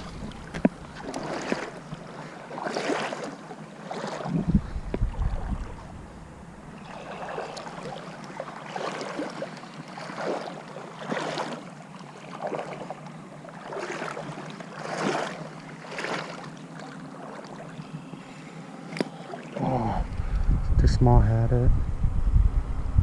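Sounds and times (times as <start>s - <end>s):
water splashing around wading legs: 0.0s - 5.9s, 6.8s - 18.3s, 18.9s - 19.7s.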